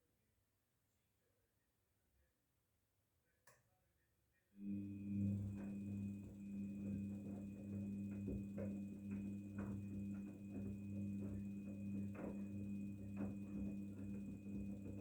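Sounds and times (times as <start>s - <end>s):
washing machine hum with whine: 4.6s - 15.0s.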